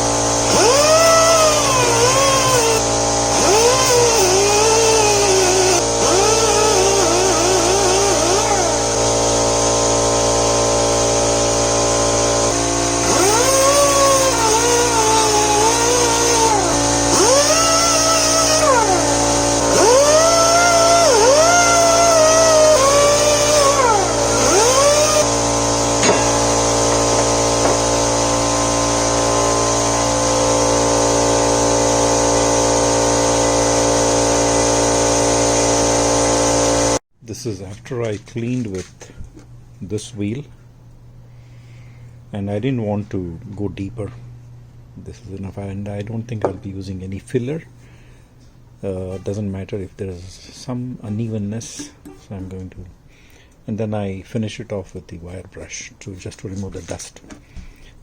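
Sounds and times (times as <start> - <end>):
power tool wheel grinding metal: 0.0 - 37.0.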